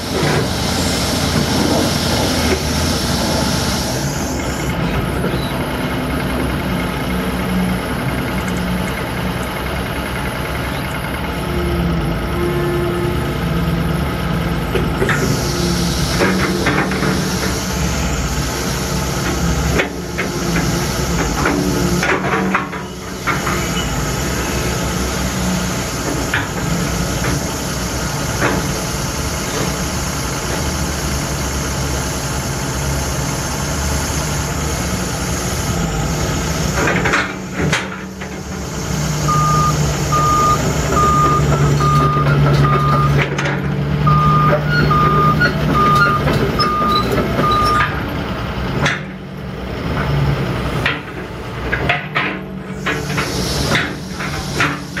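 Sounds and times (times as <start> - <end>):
excavator diesel engine running: 0.0 - 55.0
motion alarm beeping: 39.3 - 43.2, 44.1 - 47.9.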